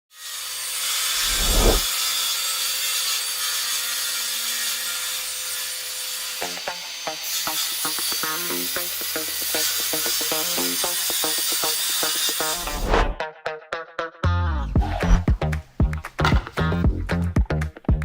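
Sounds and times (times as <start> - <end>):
circular saw cutting wood: 0.1 - 13.2
rhythmic music: 14.2 - 18.0.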